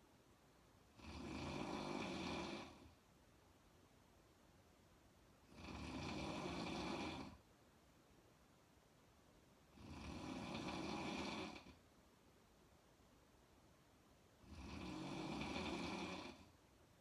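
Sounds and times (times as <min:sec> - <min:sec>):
quiet breaths: 0:00.0 - 0:17.0
woman snoring loudly: 0:01.0 - 0:02.9, 0:05.5 - 0:07.4, 0:09.7 - 0:11.8, 0:14.4 - 0:16.5.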